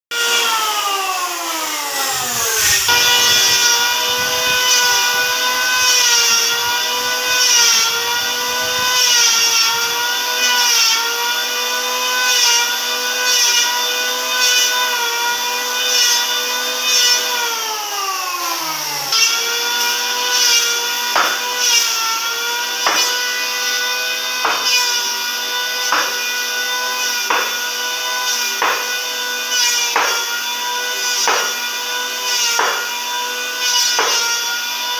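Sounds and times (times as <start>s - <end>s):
power tool motor whining: 0.1s - 34.9s
sharp knocks: 24.4s - 24.7s, 27.3s - 27.6s.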